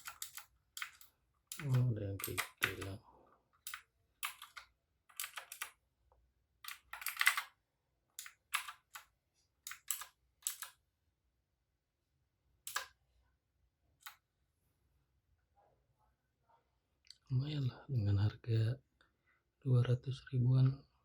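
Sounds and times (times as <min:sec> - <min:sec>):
mechanical keyboard key clicks: 0:00.0 - 0:02.9, 0:09.7 - 0:10.7, 0:12.7 - 0:12.9.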